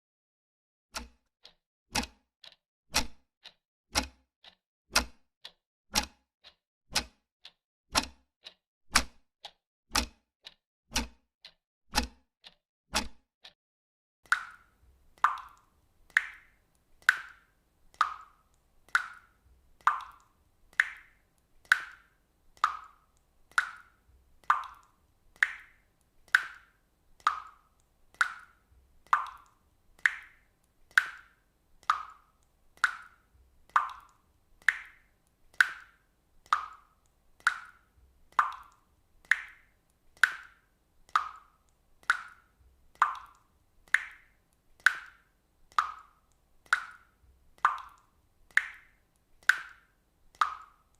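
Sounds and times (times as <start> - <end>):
water droplets dripping: 14.2 - 50.9.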